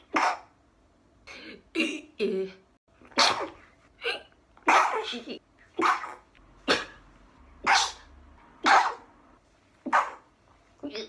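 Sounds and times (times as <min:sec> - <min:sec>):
person sneezing: 0:03.2 - 0:07.0.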